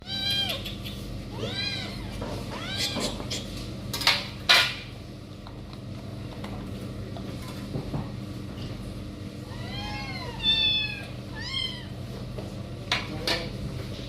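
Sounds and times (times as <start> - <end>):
cat meowing: 0.0 - 0.6, 1.3 - 3.2, 9.5 - 11.9.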